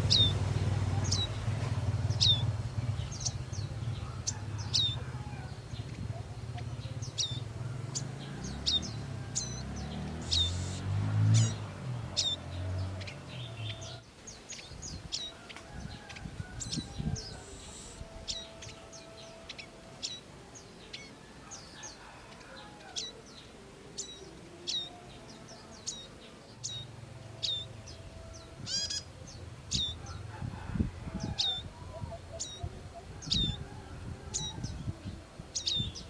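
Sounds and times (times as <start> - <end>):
bird chirping high and sharp: 9.5 - 11.6.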